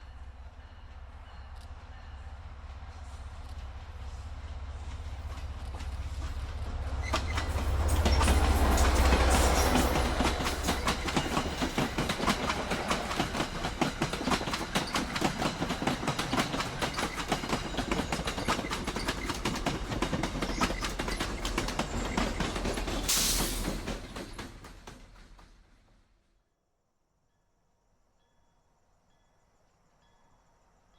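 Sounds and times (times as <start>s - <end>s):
train rumbling past: 0.0s - 26.1s
wheels clacking over rail joints: 4.9s - 25.7s.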